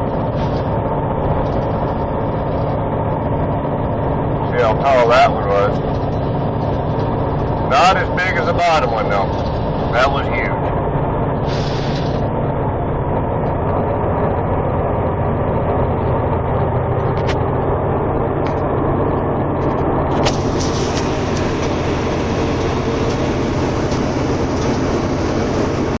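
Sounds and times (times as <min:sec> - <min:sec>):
diesel truck engine drone: 0:00.0 - 0:26.0
road noise: 0:00.0 - 0:26.0
sharp click: 0:17.2 - 0:17.4, 0:20.1 - 0:21.7
rattles in cab: 0:19.6 - 0:26.0.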